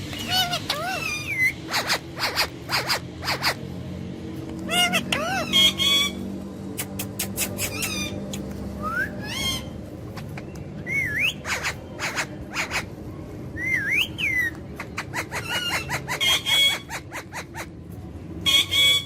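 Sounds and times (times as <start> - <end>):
harsh parrot calls: 0.1 - 3.6, 4.7 - 6.2, 10.8 - 13.0, 14.1 - 17.7
parrot whistling: 0.3 - 3.6, 8.8 - 9.7, 10.8 - 12.7, 13.6 - 14.5.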